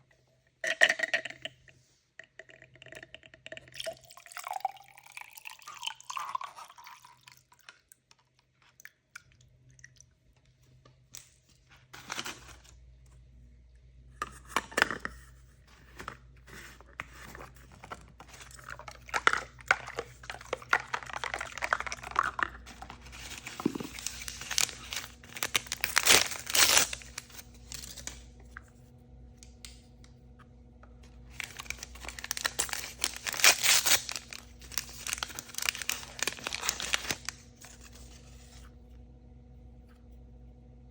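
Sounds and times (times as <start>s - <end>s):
plastic wrapping crinkling and tearing: 11.9s - 12.8s, 17.7s - 28.3s, 31.2s - 38.6s.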